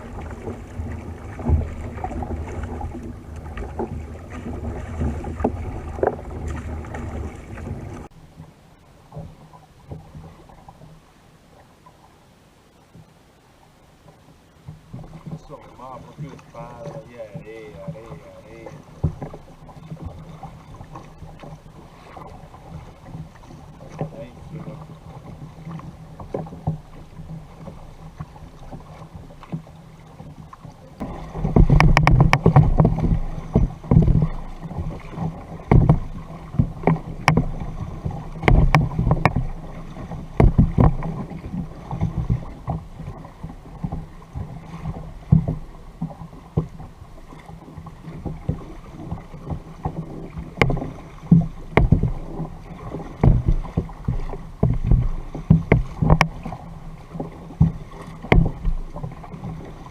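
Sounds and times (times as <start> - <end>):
water sloshing and splashing: 0.0 - 12.2, 14.0 - 59.9
knocks against kayak hull: 31.0 - 47.5, 48.1 - 59.7.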